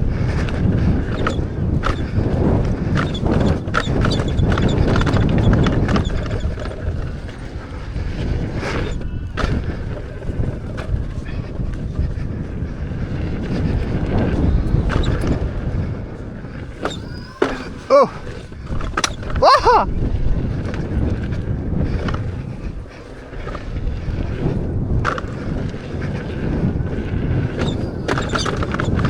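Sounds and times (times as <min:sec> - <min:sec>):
wind buffeting microphone: 0:00.0 - 0:29.0
knocks and rattles: 0:02.9 - 0:07.1.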